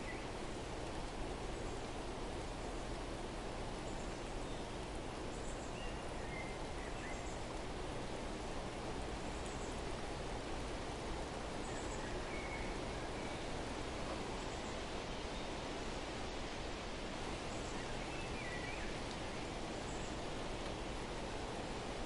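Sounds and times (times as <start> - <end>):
faint bird chirps: 3.8 - 7.6, 11.6 - 13.6, 17.5 - 20.2.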